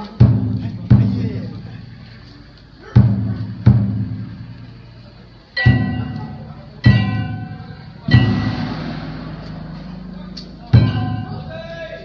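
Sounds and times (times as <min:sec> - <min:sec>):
deep drum strokes: 0:00.0 - 0:02.0, 0:03.0 - 0:05.0, 0:05.6 - 0:12.0
ringing metal gong: 0:05.6 - 0:12.0.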